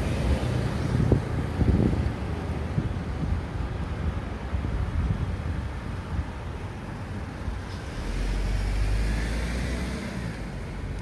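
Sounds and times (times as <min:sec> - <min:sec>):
wind buffeting microphone: 0:00.0 - 0:06.6
traffic noise: 0:00.0 - 0:11.0.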